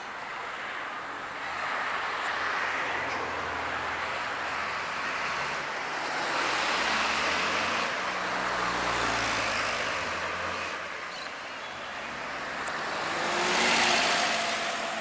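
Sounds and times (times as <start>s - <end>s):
road traffic: 0.0s - 15.0s
vehicle engine passing: 12.1s - 15.0s.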